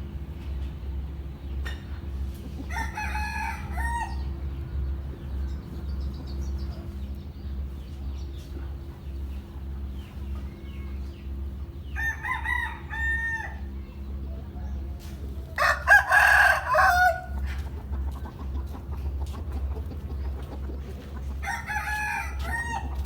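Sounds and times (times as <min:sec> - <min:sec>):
steady low hum: 0:00.0 - 0:23.0
roosters crowing: 0:02.2 - 0:05.5, 0:11.5 - 0:14.2, 0:15.2 - 0:23.0.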